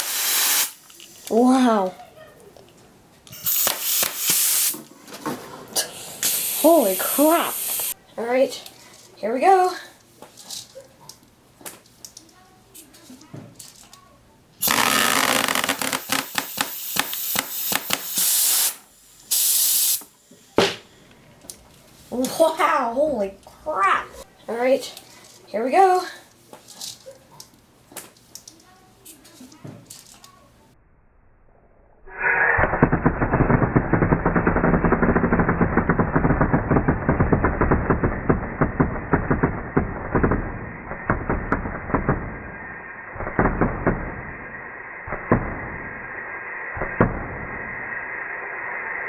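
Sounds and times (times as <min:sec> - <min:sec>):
compressed air hissing: 0:00.0 - 0:01.8, 0:03.3 - 0:05.0, 0:05.7 - 0:08.0, 0:14.6 - 0:22.6
rapid sharp clicks of bbs: 0:14.6 - 0:18.6
bb gun rattling: 0:14.6 - 0:18.7, 0:19.9 - 0:22.4.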